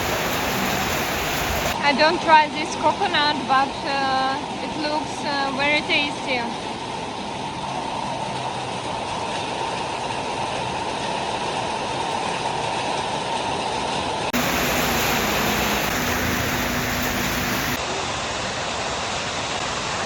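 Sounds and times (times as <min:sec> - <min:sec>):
heavy rain hissing: 0:00.0 - 0:01.8, 0:14.4 - 0:17.8.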